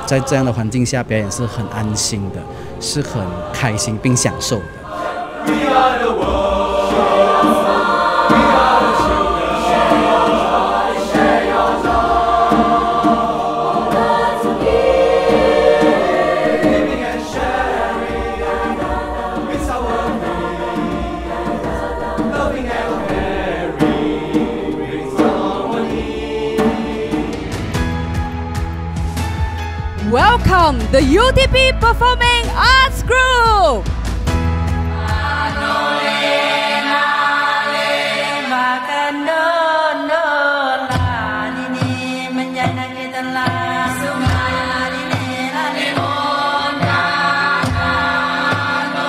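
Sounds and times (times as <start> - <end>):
choir singing: 0.0 - 28.9, 34.7 - 49.0
low accompaniment: 0.0 - 29.1.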